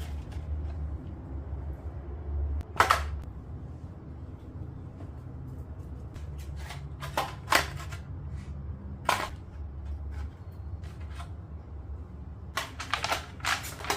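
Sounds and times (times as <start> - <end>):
steady low hum: 0.0 - 7.1
plastic packaging crinkling: 12.6 - 13.9.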